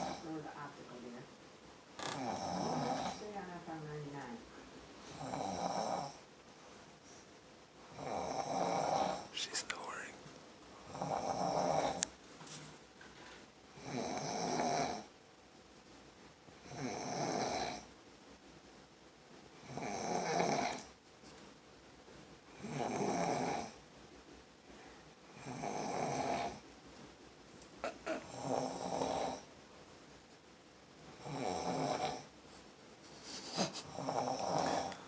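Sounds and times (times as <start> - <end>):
loud snoring: 2.0 - 3.2, 5.1 - 6.2, 8.0 - 9.3, 10.9 - 12.0, 13.8 - 15.1, 16.7 - 17.8, 22.6 - 23.7, 25.4 - 26.6, 28.0 - 29.4, 33.9 - 35.0
quiet breathing: 4.4 - 7.5, 8.2 - 12.1, 24.6 - 26.6, 31.4 - 35.0.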